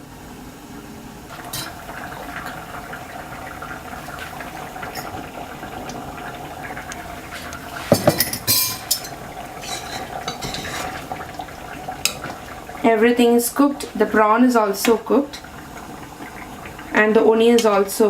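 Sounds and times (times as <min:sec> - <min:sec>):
curry bubbling in a pan: 0:01.3 - 0:18.0
cookware clinking and clattering: 0:07.4 - 0:11.2, 0:12.0 - 0:12.4.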